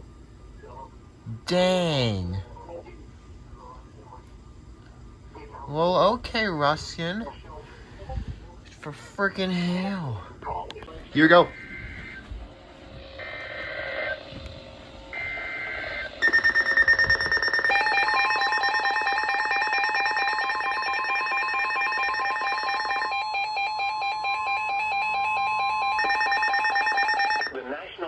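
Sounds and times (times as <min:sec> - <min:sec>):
steady warning alarm tone: 0:15.2 - 0:27.6
fast pulsing electronic beep: 0:16.2 - 0:23.1, 0:26.0 - 0:27.6
warbling data bursts: 0:16.2 - 0:23.1.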